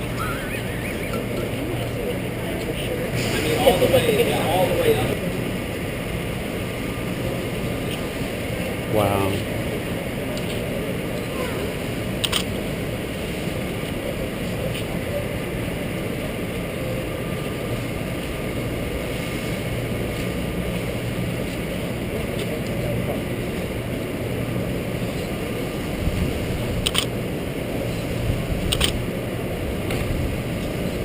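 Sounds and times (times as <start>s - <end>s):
building machinery rumble: 0.0s - 31.0s
distant activity: 0.0s - 31.0s.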